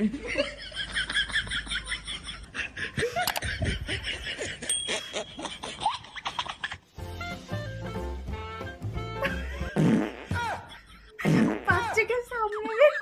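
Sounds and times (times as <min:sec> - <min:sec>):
laughing and snickering: 0:00.2 - 0:06.8, 0:09.2 - 0:13.0
high-pitched giggling: 0:01.8 - 0:06.8.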